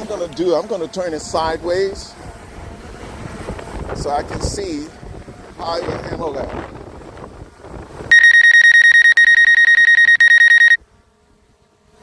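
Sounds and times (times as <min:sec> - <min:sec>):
rapid high-pitched electronic beeping: 0:08.1 - 0:10.8.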